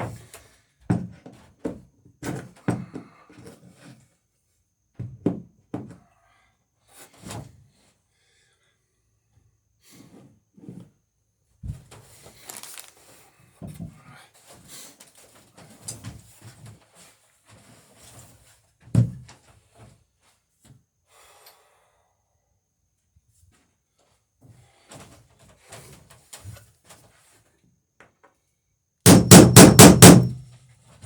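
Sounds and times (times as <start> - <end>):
hammer knocking on wood: 29.1 - 30.4.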